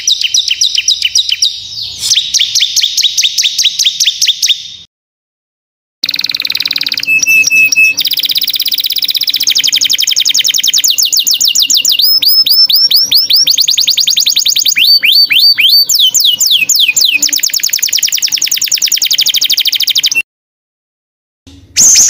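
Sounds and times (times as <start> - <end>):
songbird fast high trill: 6.0 - 20.2.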